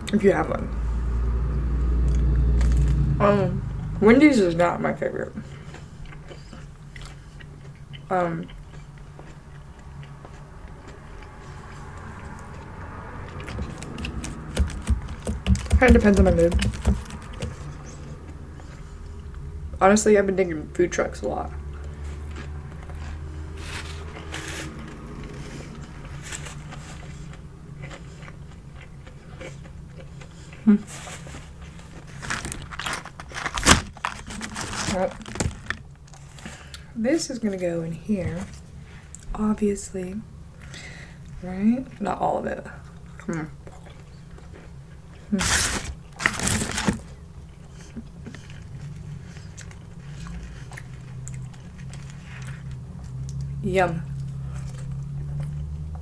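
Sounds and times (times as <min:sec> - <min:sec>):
steady low hum: 0:00.0 - 0:56.0
person chewing food: 0:05.4 - 0:19.5, 0:21.7 - 0:36.9, 0:42.8 - 0:53.6, 0:54.2 - 0:56.0
crinkly wrapper rustles: 0:31.0 - 0:36.5, 0:45.3 - 0:47.2.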